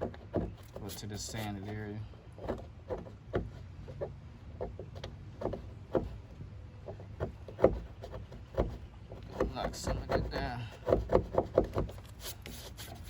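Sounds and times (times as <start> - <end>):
scraping and chipping body filler: 0.0 - 13.0.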